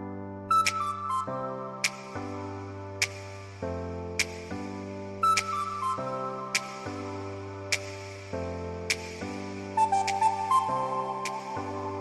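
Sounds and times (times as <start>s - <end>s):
soft background music: 0.0s - 12.0s.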